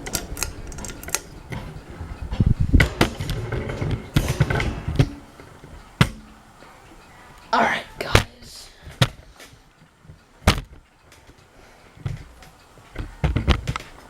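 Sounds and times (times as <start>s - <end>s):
handling clicks and knocks: 0.0s - 6.8s, 8.9s - 11.4s, 12.0s - 14.0s
low handling rumble: 0.0s - 7.6s
ceiling fan motor hum: 0.0s - 14.0s.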